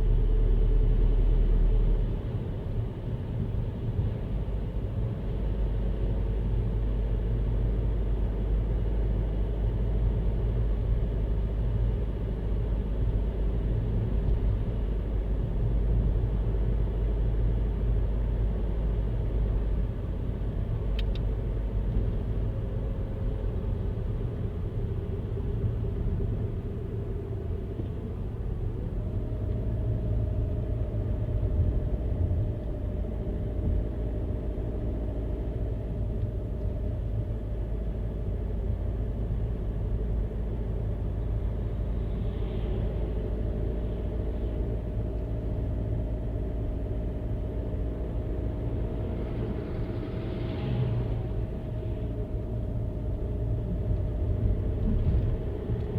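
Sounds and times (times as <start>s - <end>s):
car road and engine rumble: 0.0s - 55.9s.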